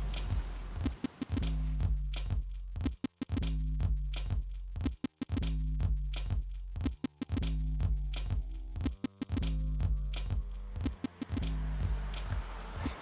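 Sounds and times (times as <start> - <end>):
electronic drum beat and bass: 0.0 - 13.0.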